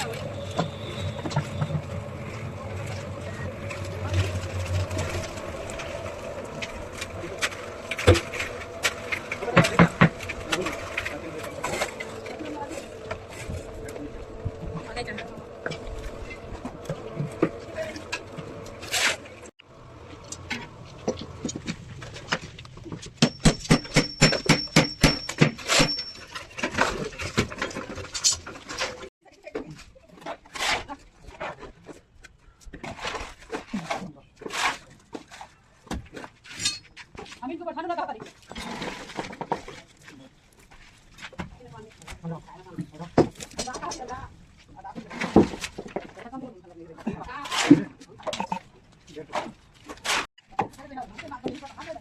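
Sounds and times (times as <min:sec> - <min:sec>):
small engine droning: 0:00.0 - 0:20.9
sharp knocks and clicks: 0:20.4 - 0:26.0.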